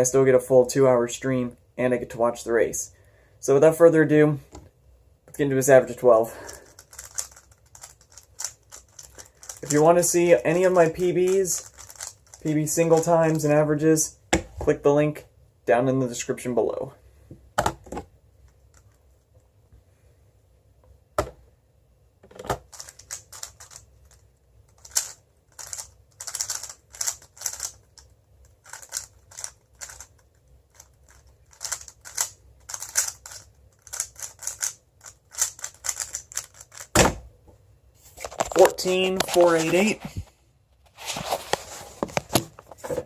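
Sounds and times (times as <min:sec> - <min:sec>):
puzzle cube plastic clicking: 0:06.7 - 0:13.4, 0:22.6 - 0:37.0
loud thump: 0:37.0 - 0:37.3.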